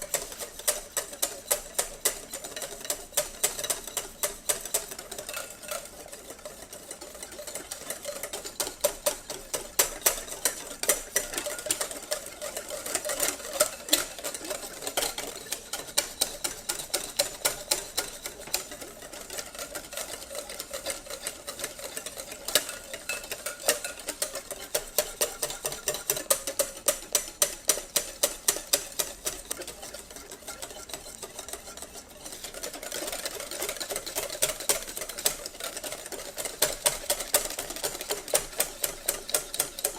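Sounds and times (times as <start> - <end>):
whisk clicking against bowl: 0.0 - 39.9.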